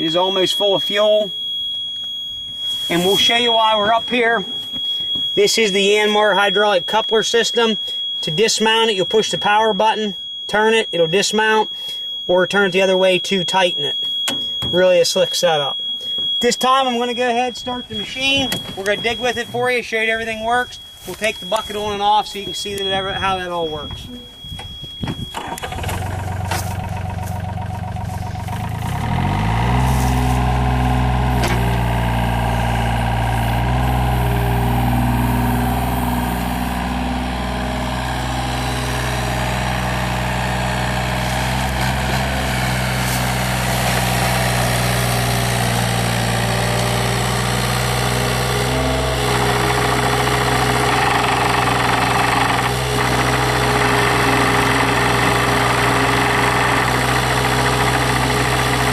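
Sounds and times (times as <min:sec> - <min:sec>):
high beep: 0:00.0 - 0:38.9
diesel engine starting and running: 0:02.1 - 0:58.9.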